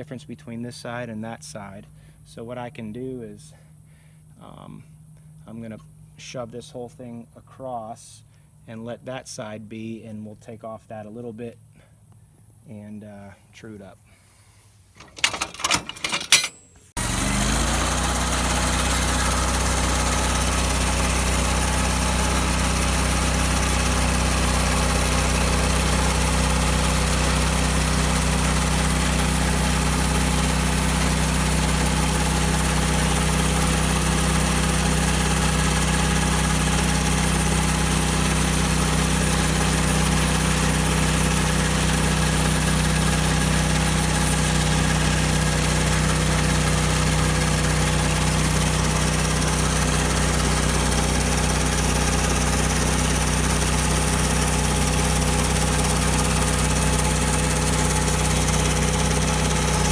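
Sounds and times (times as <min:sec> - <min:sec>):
bandsaw mill engine running: 0:15.0 - 0:59.9.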